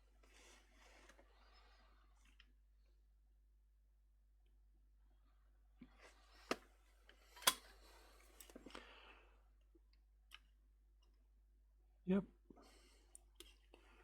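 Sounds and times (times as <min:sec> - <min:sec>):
small tools clicking and tapping: 0:07.4 - 0:07.7.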